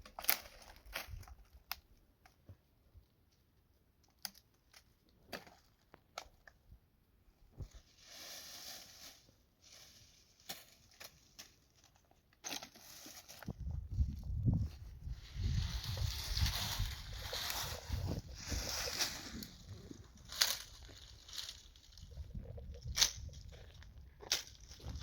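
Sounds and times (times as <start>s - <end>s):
dry twigs snapping and crackling: 0.0s - 2.4s, 15.4s - 25.0s
brush rustling: 7.6s - 25.0s.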